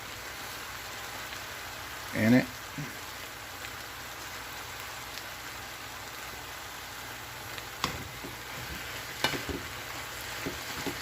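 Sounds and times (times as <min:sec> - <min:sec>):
food sizzling in a pan: 0:00.0 - 0:11.0
utensil knocking on pan: 0:07.8 - 0:09.8, 0:10.4 - 0:11.0.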